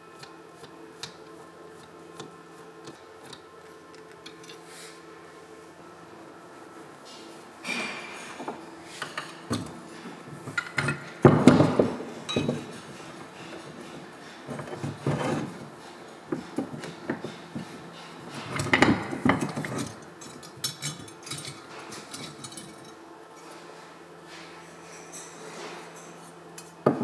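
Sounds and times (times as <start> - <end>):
metal parts and tools clinking: 7.6 - 15.6, 16.3 - 23.0.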